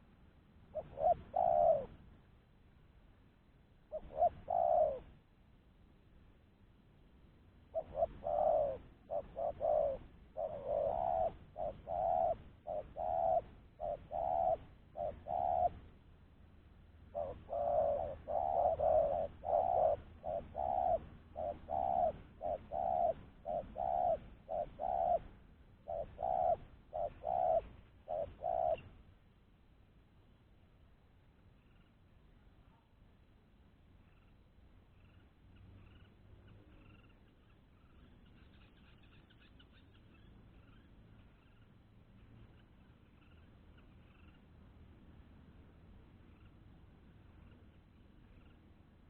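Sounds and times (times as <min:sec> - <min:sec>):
dove cooing: 0:00.7 - 0:02.0, 0:03.9 - 0:05.2, 0:07.7 - 0:16.0, 0:17.1 - 0:29.0.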